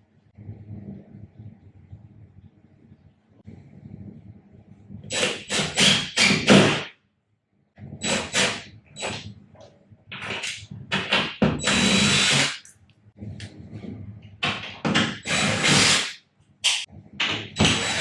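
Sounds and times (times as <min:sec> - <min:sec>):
cordless drill bursts: 0:11.6 - 0:12.6, 0:15.2 - 0:16.1, 0:17.6 - 0:18.0.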